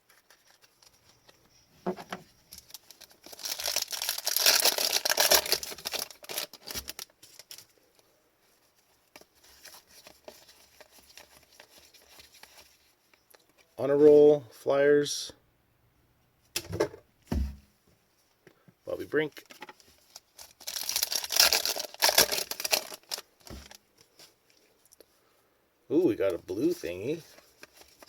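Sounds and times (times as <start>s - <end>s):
foil wrapper tearing and crinkling: 0.0s - 1.0s, 2.5s - 7.7s, 20.0s - 23.8s, 27.3s - 28.0s
cards being handled: 0.0s - 7.7s, 26.3s - 28.0s.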